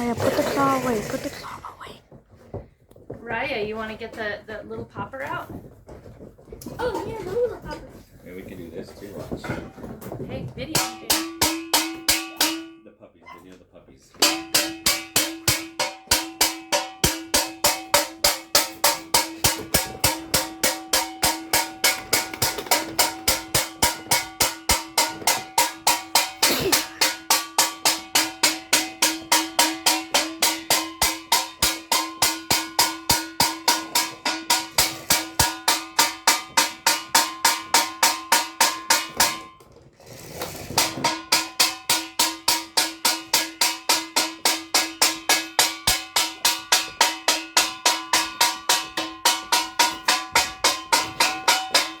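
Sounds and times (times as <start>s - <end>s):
rapid drum-like beats: 14.2s - 39.4s, 40.8s - 52.0s.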